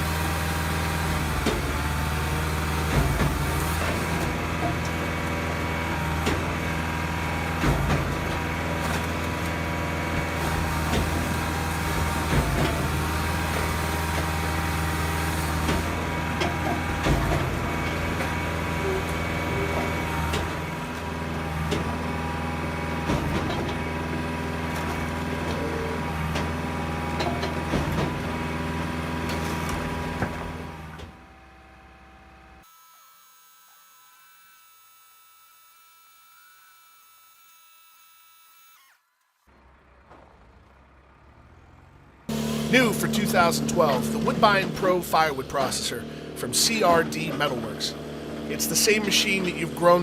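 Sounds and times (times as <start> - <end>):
machine engine and hydraulics drone: 0.0 - 32.6, 38.8 - 50.0
logs knocking and cracking: 1.4 - 31.2.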